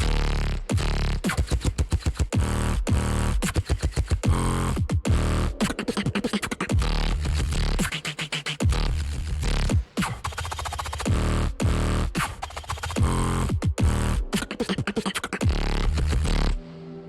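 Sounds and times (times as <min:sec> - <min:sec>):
beatboxing: 0:00.0 - 0:16.6.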